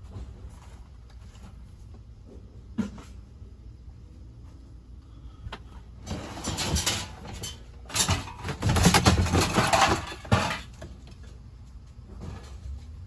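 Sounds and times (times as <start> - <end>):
scrap metal clanking: 6.0 - 10.9.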